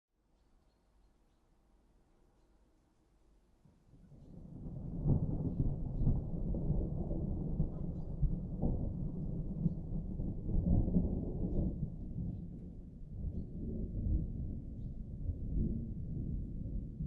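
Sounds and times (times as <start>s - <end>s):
distant thunder rumbling: 4.3s - 17.0s.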